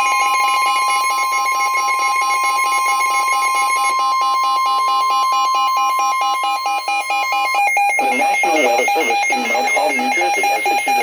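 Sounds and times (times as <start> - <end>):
fast-pulsing alarm tones: 0.0 - 11.0
steady electronic alert tone: 8.0 - 11.0.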